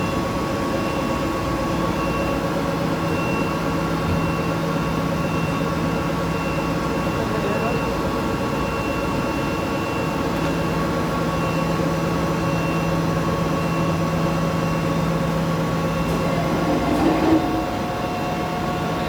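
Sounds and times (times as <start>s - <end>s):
machine motor and hydraulic hum: 9.1s - 19.0s.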